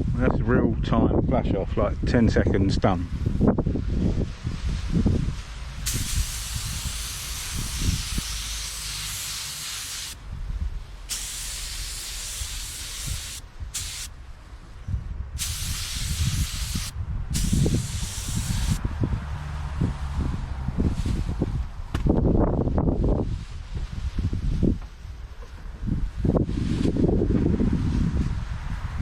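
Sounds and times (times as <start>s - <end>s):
paint spray gun hissing: 5.8s - 10.2s, 11.1s - 14.1s, 15.4s - 18.8s.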